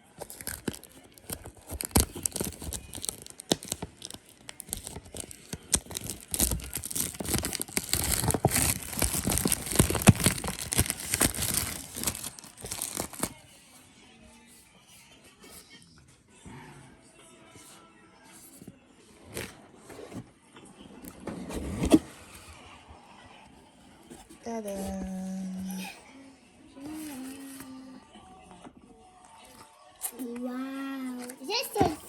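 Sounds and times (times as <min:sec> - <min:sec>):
packaging tearing and crinkling: 0:00.2 - 0:13.4.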